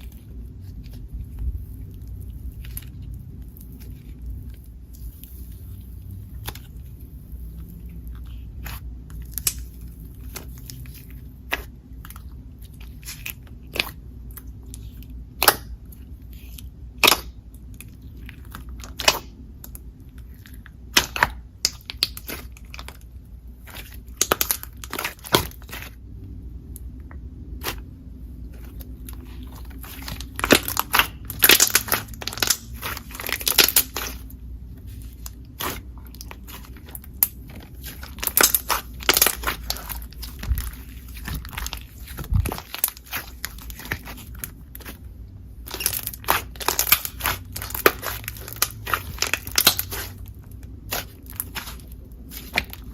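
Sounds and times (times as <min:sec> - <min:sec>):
slime clicking and popping: 0:09.2 - 0:09.7, 0:20.9 - 0:22.8, 0:24.1 - 0:25.9, 0:29.8 - 0:34.3, 0:35.6 - 0:44.9, 0:45.6 - 0:50.2.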